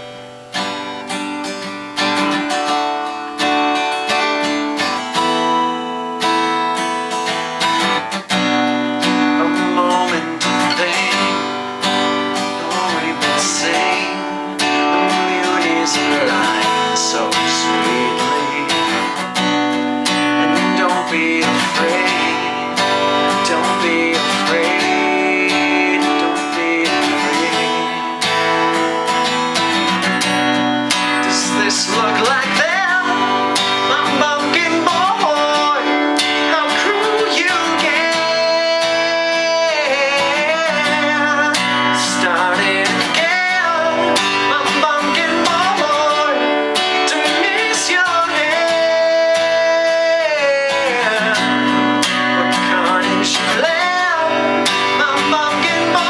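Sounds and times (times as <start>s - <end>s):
acoustic guitar strumming: 0.0s - 56.0s
person singing long notes: 9.2s - 19.2s, 20.4s - 29.0s, 31.1s - 51.6s.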